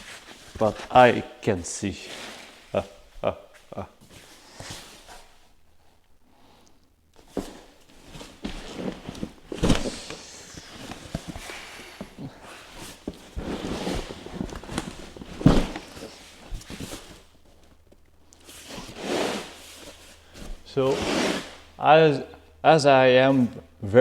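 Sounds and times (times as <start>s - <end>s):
cardboard box being handled: 7.3s - 17.7s.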